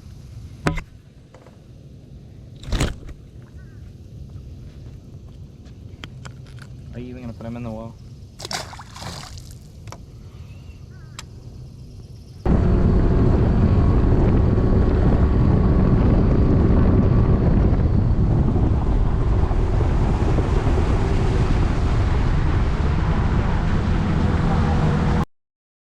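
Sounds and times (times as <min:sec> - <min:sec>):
low hum: 0:00.0 - 0:25.2
wind buffeting microphone: 0:12.5 - 0:25.2.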